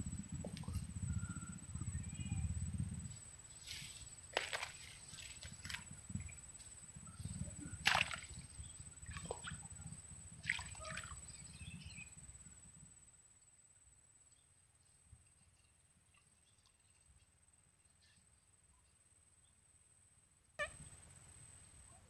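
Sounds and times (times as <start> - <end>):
shallow water splashing: 7.6 - 11.3.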